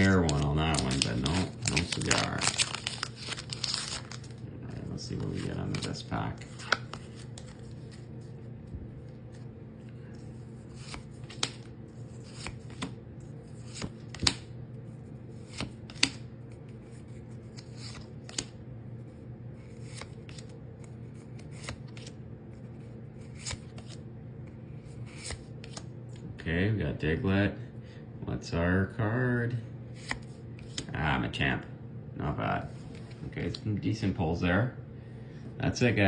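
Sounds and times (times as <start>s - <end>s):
low electrical hum: 0.0s - 36.0s
trading cards snapping: 10.8s - 11.7s, 13.7s - 14.5s, 15.5s - 16.2s.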